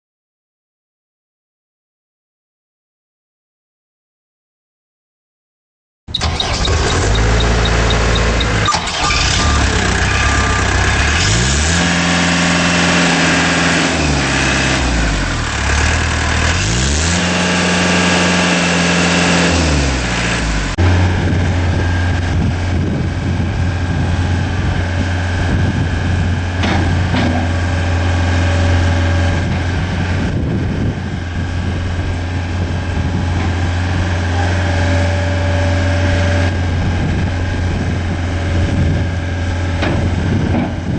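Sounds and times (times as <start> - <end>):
loader engine starting and revving: 6.1 - 40.9.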